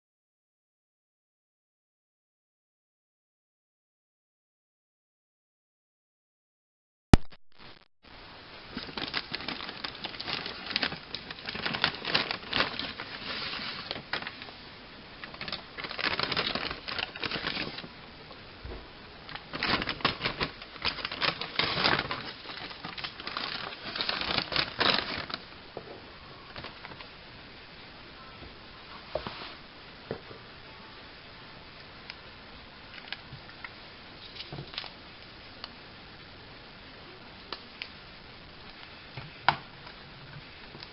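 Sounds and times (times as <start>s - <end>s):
packaging crinkling and clicking: 8.8s - 14.5s, 15.2s - 17.9s, 19.3s - 25.4s.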